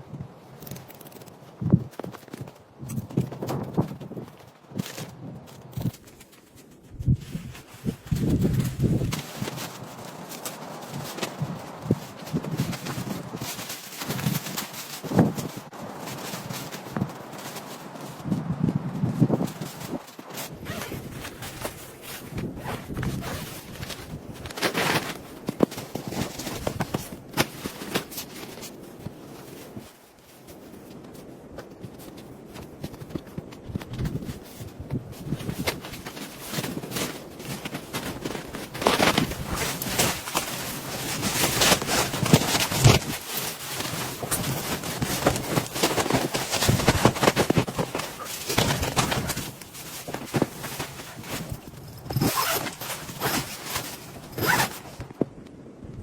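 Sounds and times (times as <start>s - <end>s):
clicks knocks and crunches: 19.4s - 29.2s, 35.2s - 55.3s
zipper being pulled: 20.5s - 25.0s, 38.7s - 55.0s.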